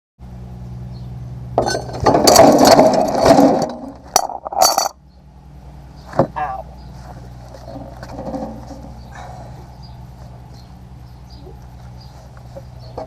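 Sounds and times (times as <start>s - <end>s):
steady low hum: 0.2s - 13.0s
metal tools clanking: 1.6s - 5.0s, 7.5s - 9.3s.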